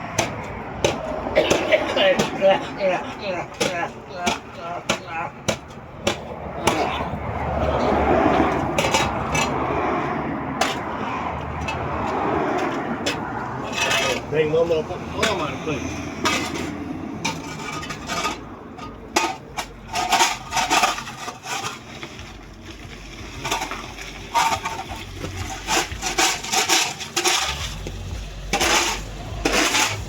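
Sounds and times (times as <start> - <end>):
person coughing harshly: 1.4 - 3.5.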